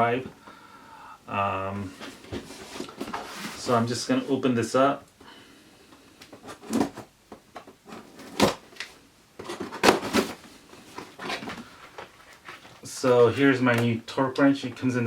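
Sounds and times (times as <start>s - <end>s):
packaging rustling and scraping: 1.9s - 4.0s, 6.3s - 13.8s.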